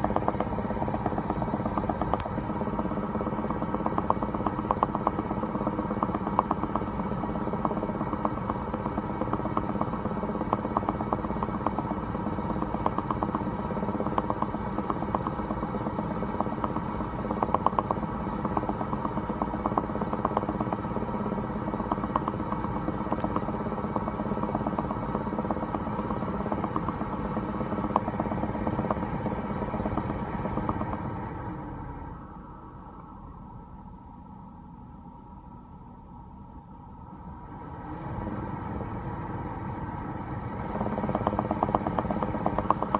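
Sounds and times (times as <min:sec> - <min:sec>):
rapid popping and clicking: 0:00.0 - 0:31.5, 0:40.5 - 0:42.9
engine and road drone: 0:00.0 - 0:42.9.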